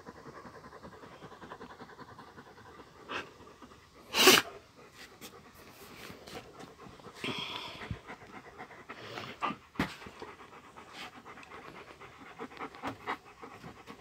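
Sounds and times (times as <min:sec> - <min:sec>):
dog panting: 0:00.0 - 0:14.0.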